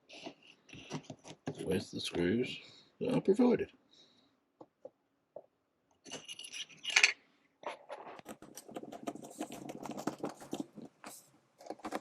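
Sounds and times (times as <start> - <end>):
small parts rustling and scraping: 0.1 - 2.3, 6.0 - 12.0.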